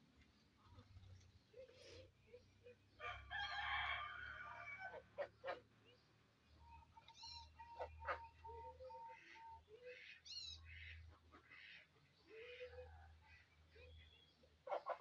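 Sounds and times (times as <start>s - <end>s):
bird cooing: 1.0s - 2.8s.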